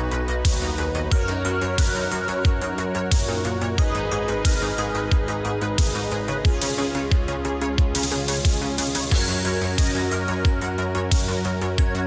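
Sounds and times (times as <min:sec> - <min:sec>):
ticking hi-hats: 0:00.0 - 0:12.0
kick drum beat: 0:01.8 - 0:03.9, 0:04.5 - 0:12.0.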